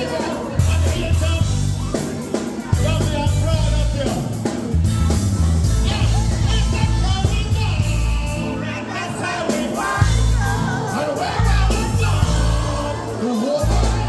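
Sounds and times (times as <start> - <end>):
dancehall song with sung vocal: 0.0 - 1.4, 5.8 - 14.0
heavy pulsing bass line: 0.0 - 8.6, 10.0 - 14.0.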